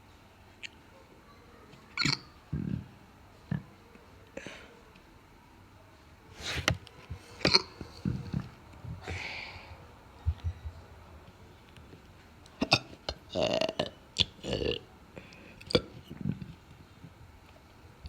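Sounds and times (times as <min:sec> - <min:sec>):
woman hiccuping: 0:02.0 - 0:02.2.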